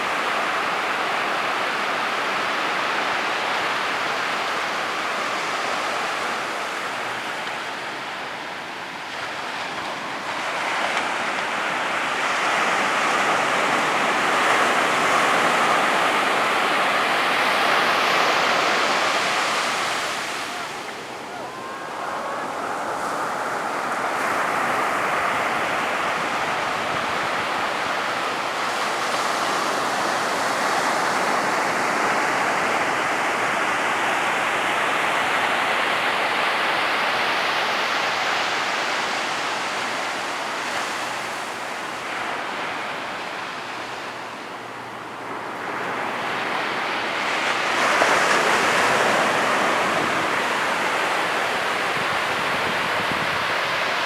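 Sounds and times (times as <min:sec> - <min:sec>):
ocean surf breaking: 0:00.0 - 0:54.0
wave crashing: 0:45.4 - 0:54.0.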